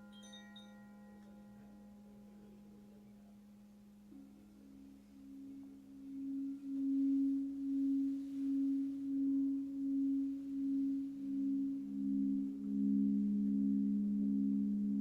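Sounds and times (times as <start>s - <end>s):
singing bowl low tone wobbling: 4.1s - 15.0s.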